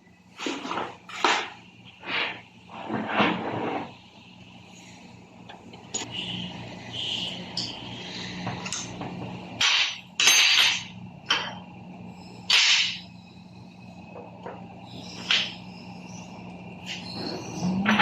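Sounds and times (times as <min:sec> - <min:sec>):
faint steady hum: 0:00.0 - 0:18.0
metal tools knocking and scraping: 0:08.4 - 0:11.6.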